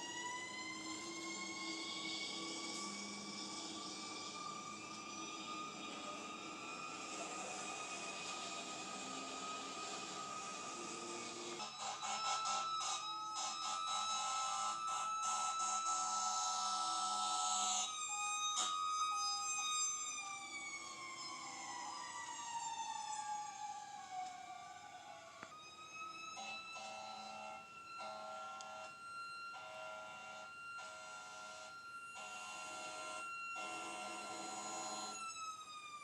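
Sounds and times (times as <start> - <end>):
fire truck siren: 0.0 - 36.0
fire truck horn blasts: 26.8 - 35.1.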